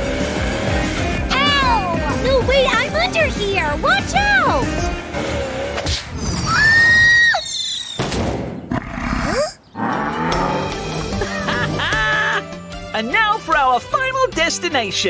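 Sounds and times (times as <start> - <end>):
cartoon background music: 0.0 - 6.0, 9.8 - 15.0.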